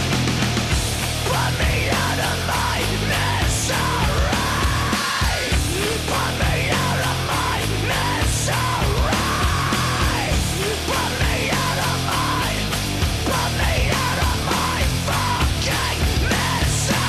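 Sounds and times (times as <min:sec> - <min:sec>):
heavy metal music: 0:00.0 - 0:17.0
shouted vocals: 0:01.2 - 0:17.0.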